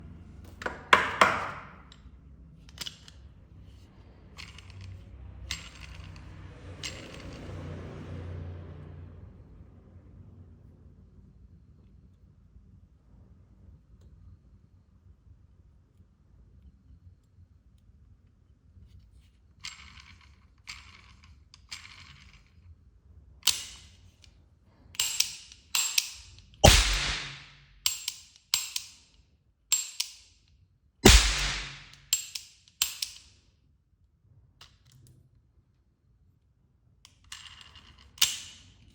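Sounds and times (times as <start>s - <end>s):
toy gun firing: 26.6s - 27.6s, 31.0s - 32.1s.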